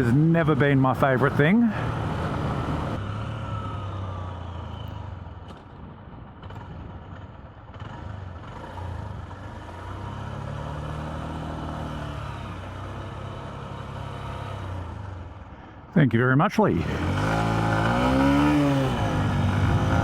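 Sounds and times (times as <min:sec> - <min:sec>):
motorcycle engine running: 0:01.7 - 0:14.2, 0:16.8 - 0:20.0
wind buffeting microphone: 0:18.4 - 0:20.0.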